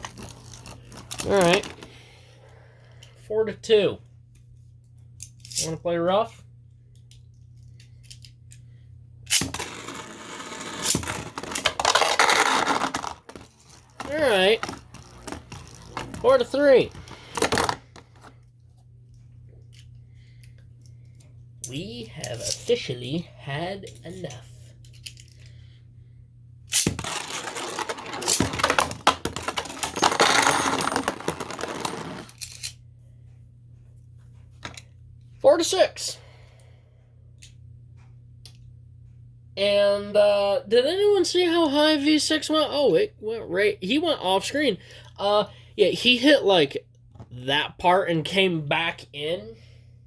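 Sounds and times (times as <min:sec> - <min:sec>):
spinning tops colliding and grinding: 0:09.3 - 0:16.2.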